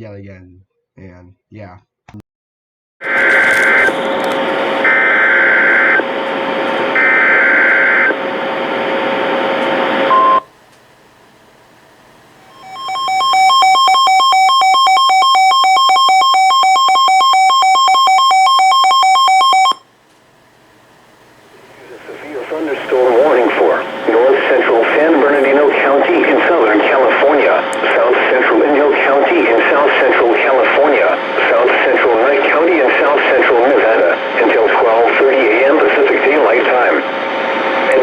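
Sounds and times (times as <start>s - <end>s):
screeching data bursts: 3.0s - 10.2s
static-like hiss: 3.0s - 12.6s, 20.0s - 38.0s
steady hum tones: 3.0s - 18.3s, 19.8s - 38.0s
pulsing two-tone alert signal: 12.5s - 19.8s.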